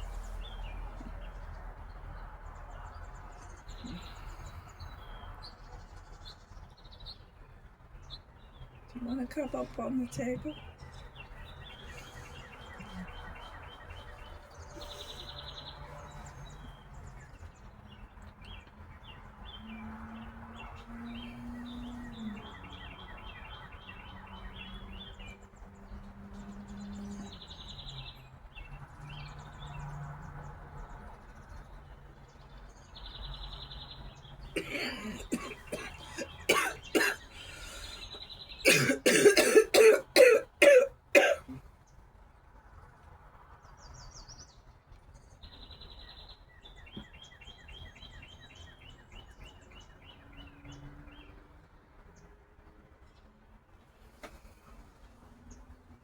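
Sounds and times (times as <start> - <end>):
small birds chirping: 0.0 - 42.0, 43.6 - 51.4
woman coughing: 34.6 - 38.0, 38.6 - 41.6.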